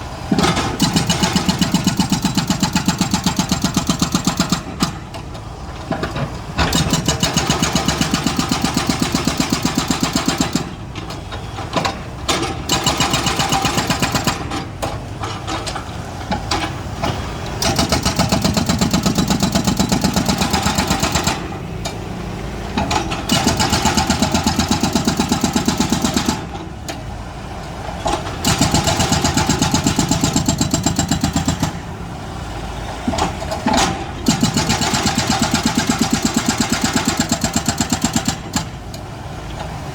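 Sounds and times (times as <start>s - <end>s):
excavator diesel engine pulsing: 0.0s - 39.9s.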